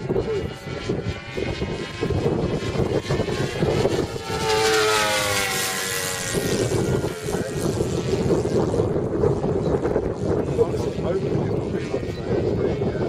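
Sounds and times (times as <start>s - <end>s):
model plane flying past: 0.0s - 13.0s.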